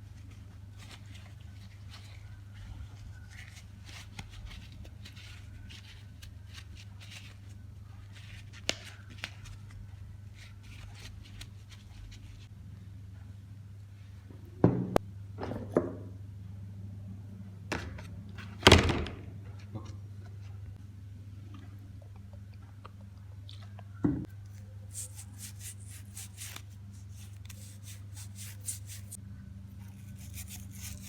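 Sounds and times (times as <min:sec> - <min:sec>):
steady low hum: 0:19.2 - 0:31.0.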